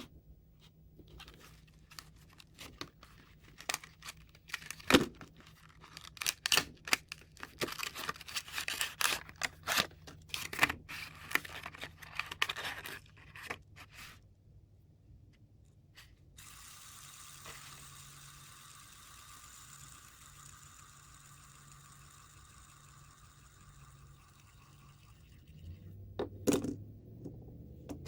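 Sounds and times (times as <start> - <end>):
packaging tearing and crinkling: 1.3 - 13.6.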